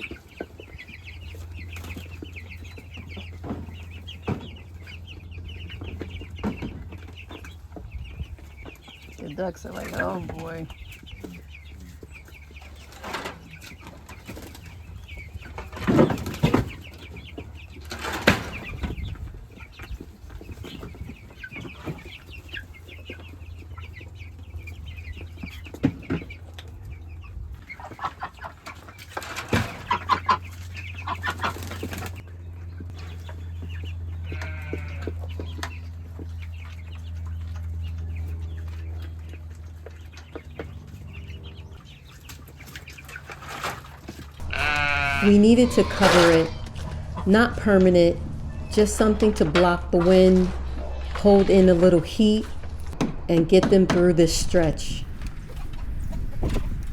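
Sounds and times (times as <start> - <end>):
young chickens clucking: 0.0 - 56.9
low steady hum: 44.4 - 56.9
loud knocks: 52.5 - 54.1.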